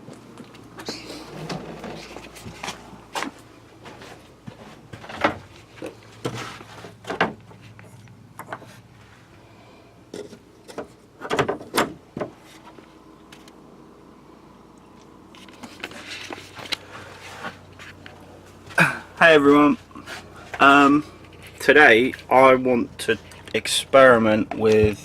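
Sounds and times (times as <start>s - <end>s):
low steady hum: 0.0s - 25.0s
objects knocking and clunking: 4.5s - 8.7s, 10.1s - 12.4s.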